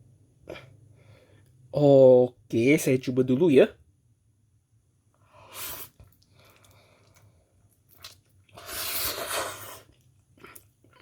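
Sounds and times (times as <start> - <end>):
person chewing noodles: 5.4 - 11.0.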